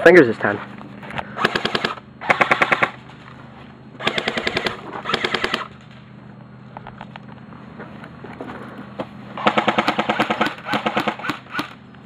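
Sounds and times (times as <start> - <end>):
airsoft gun full-auto bursts: 1.4 - 3.0, 4.0 - 5.9, 9.4 - 11.8.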